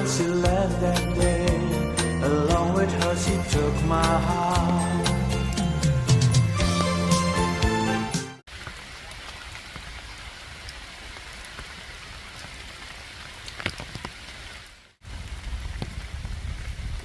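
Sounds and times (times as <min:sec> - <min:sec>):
rain falling: 0:08.5 - 0:17.0.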